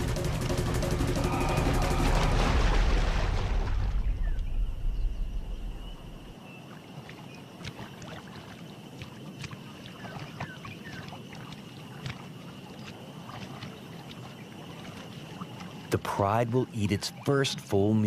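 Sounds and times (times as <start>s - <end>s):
high insect drone: 0.0s - 3.1s
loud low rumble: 0.0s - 6.3s.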